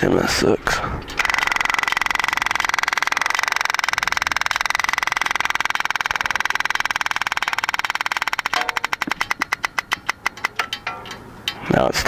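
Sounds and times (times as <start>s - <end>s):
fuel pump ticking: 1.0s - 11.6s.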